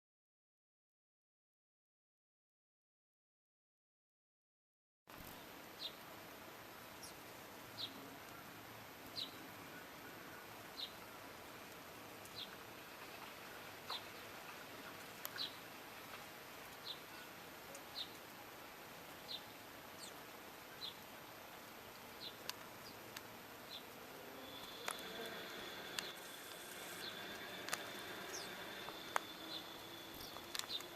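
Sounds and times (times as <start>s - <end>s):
faint steady hiss: 5.1s - 30.9s
bird chirping: 9.1s - 11.2s, 23.6s - 30.9s.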